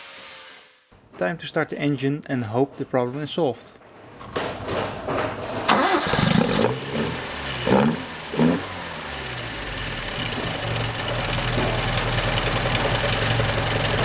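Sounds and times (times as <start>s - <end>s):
car engine starting and revving: 4.2s - 14.0s.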